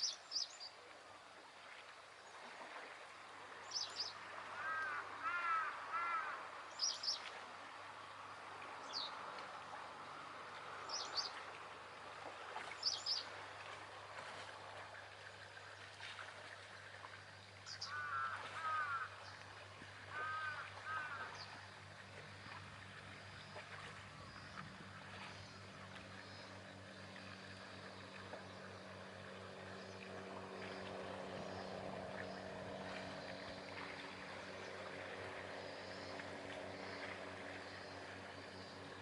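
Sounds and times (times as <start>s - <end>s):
low engine hum: 0.0s - 39.0s
water lapping: 0.0s - 39.0s
bird calling: 3.7s - 7.2s, 17.7s - 19.2s, 20.1s - 21.6s.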